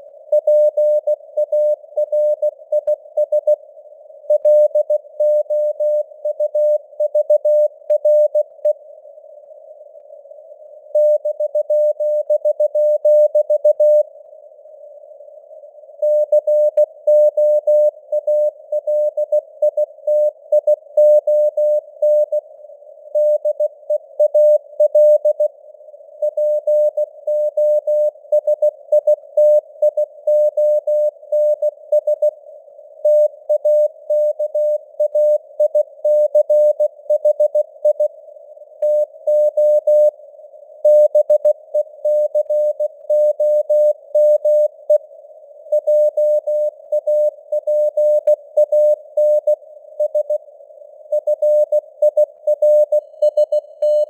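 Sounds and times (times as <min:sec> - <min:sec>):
faint radio hiss: 0:00.0 - 0:36.0, 0:36.6 - 0:53.2
morse code tone: 0:51.2 - 0:54.0.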